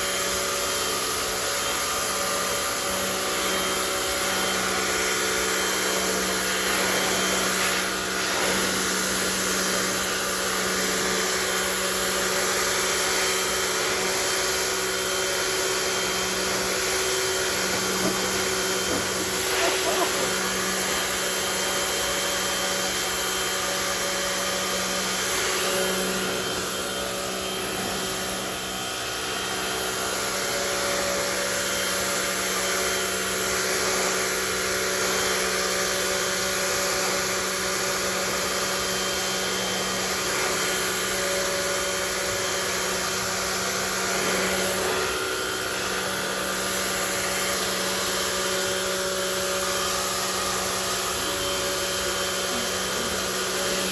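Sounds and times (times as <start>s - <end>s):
motor hum: 0.0s - 32.9s, 36.4s - 53.9s
water jet hissing on concrete: 2.6s - 34.4s.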